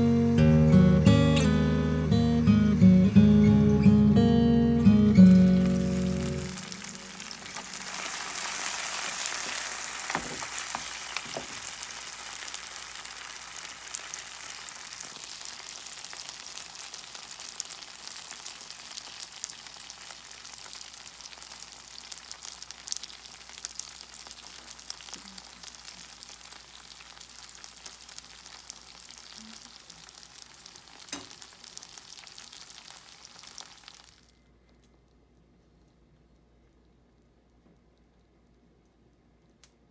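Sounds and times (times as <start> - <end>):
dumplings sizzling in a frying pan: 5.2 - 34.3.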